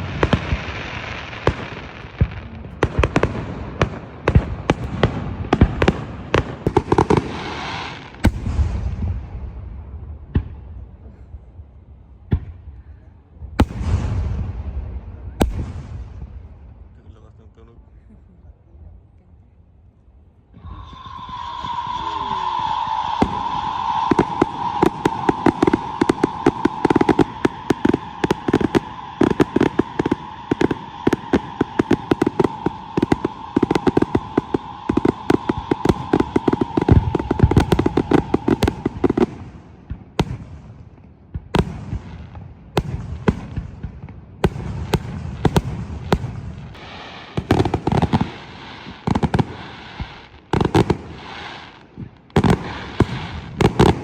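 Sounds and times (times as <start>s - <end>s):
fireworks bangs: 0.0s - 11.1s, 13.5s - 17.3s, 20.6s - 54.0s
fireworks booms and crackling: 0.0s - 17.5s, 20.5s - 54.0s
steady whistling tone: 20.6s - 39.8s.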